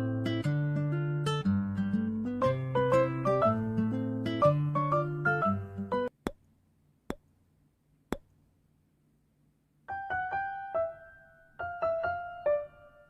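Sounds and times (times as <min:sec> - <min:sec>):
piano music: 0:00.0 - 0:06.1, 0:09.9 - 0:13.0.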